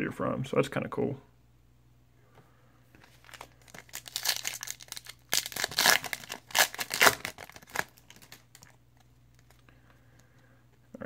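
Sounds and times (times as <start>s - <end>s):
wrapper being torn and crinkled: 3.1s - 9.6s.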